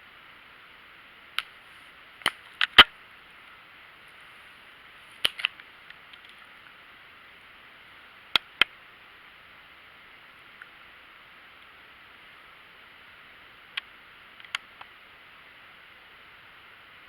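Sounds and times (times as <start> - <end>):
steady hiss: 0.0 - 17.0
faint ticks: 13.7 - 15.0.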